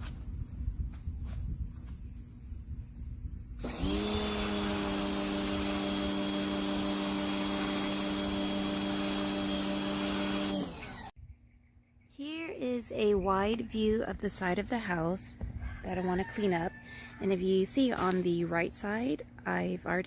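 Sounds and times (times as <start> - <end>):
electric pressure washer motor hum: 3.6 - 11.1.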